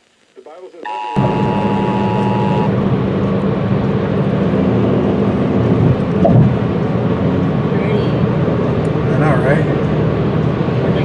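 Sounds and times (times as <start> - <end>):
static hiss and rumble: 0.0 - 11.0
two-tone alert signal: 0.8 - 2.8
low hum: 1.2 - 11.0.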